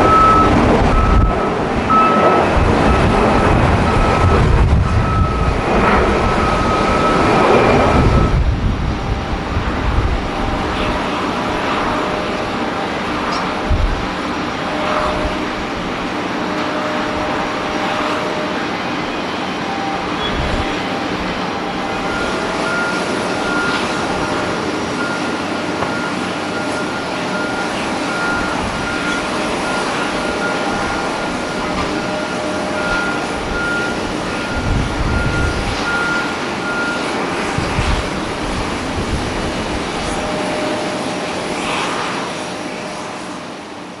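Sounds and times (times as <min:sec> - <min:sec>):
faint broken beeping tone: 0:00.0 - 0:08.4, 0:16.4 - 0:37.5
wind buffeting microphone: 0:00.0 - 0:42.8
jet engine noise: 0:00.0 - 0:44.0.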